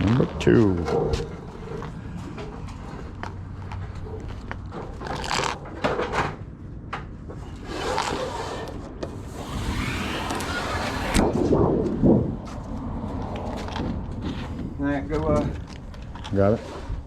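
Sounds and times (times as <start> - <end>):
metal sheet scraping: 7.7 - 12.4.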